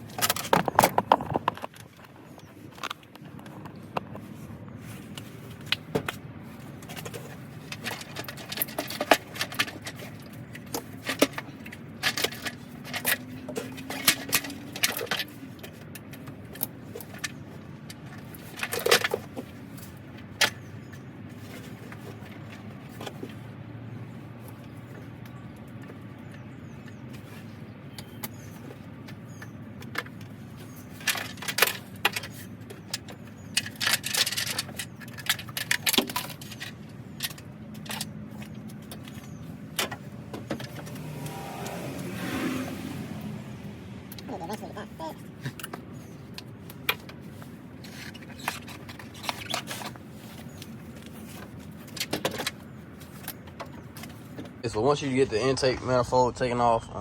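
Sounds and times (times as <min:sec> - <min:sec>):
metal tools clinking and clanking: 0:06.8 - 0:17.4.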